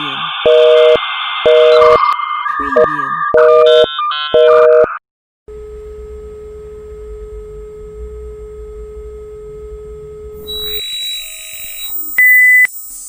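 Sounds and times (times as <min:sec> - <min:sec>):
steady tone: 0:00.0 - 0:03.9
stepped electronic tones: 0:00.3 - 0:05.0, 0:10.4 - 0:13.0
telephone busy signal: 0:00.4 - 0:05.0, 0:10.4 - 0:12.8
low hum: 0:05.5 - 0:12.8.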